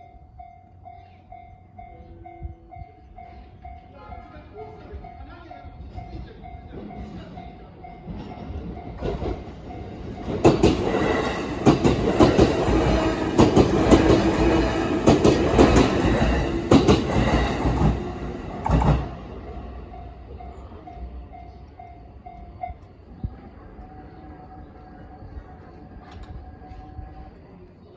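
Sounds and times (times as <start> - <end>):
level crossing warning bell: 0.0 - 27.6
train passing: 0.0 - 27.9
wheels clacking over rail joints: 6.0 - 23.0.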